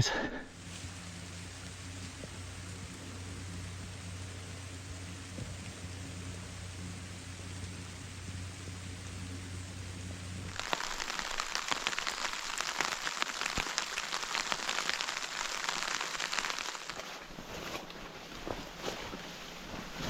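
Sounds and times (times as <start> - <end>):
low steady hum: 0.0 - 20.0
rain pattering on foliage: 0.5 - 20.0.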